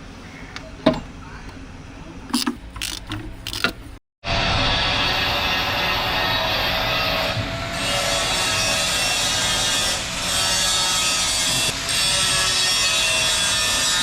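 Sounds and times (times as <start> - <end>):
abrasive power tool rasping: 5.0 - 14.0.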